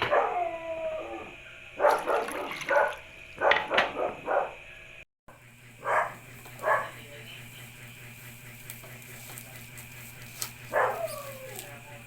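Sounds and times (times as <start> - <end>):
dog barking: 0.0 - 0.5, 1.8 - 4.6, 5.8 - 7.0, 10.7 - 11.6.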